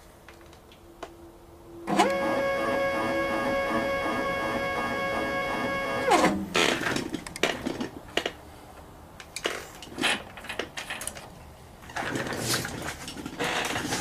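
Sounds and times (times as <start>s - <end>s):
mill motors whining: 1.9s - 6.4s.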